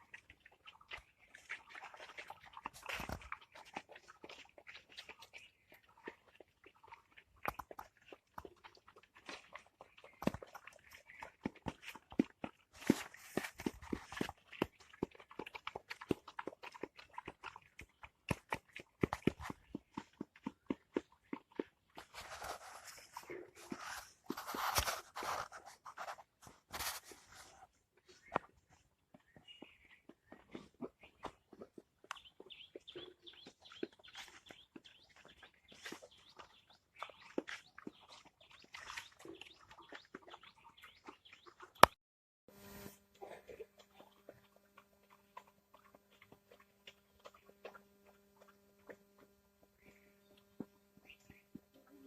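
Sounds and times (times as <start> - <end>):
scraping and rustling: 22.0 - 27.7.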